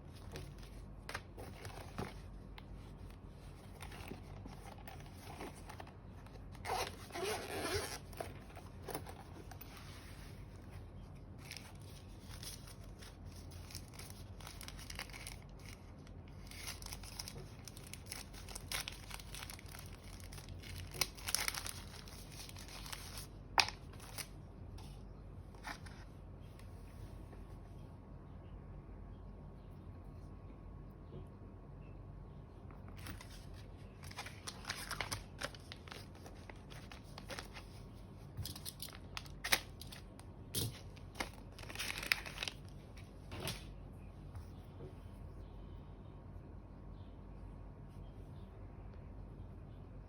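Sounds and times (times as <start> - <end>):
low steady hum: 0.0 - 50.0
packaging rustling and tearing: 0.1 - 24.4, 33.0 - 37.8, 38.4 - 43.1.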